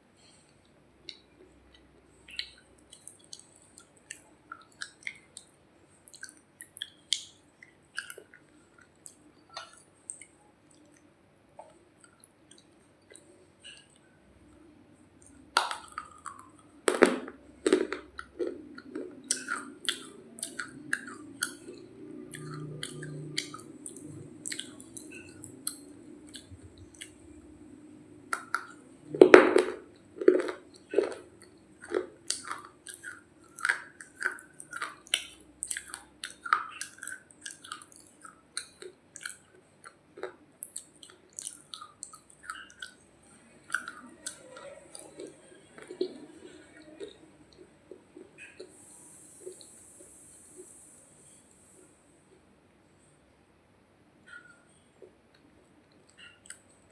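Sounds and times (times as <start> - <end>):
crunchy biting and chewing: 15.6 - 43.0.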